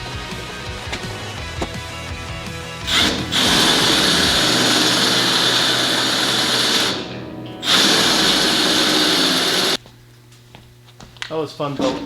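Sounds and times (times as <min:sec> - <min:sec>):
power tool running on metal: 0:02.8 - 0:09.8.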